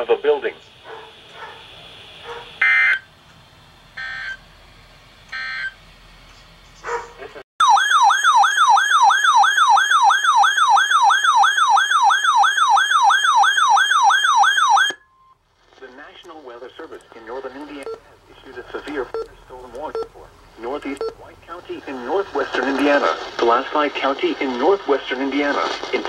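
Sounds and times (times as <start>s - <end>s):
electronic siren alarm yelping: 0.9s - 3.1s, 4.0s - 4.4s, 5.3s - 5.8s, 7.6s - 15.4s.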